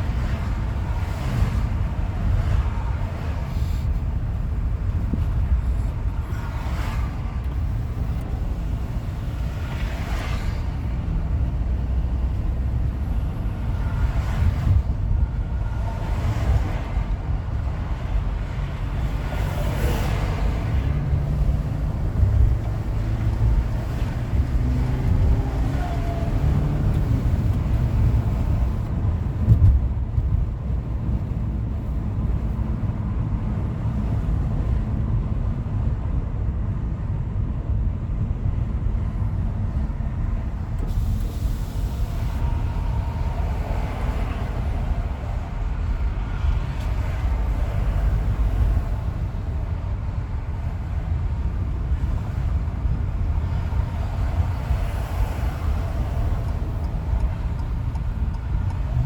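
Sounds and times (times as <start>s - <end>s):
road and tyre rumble: 0.0s - 59.0s.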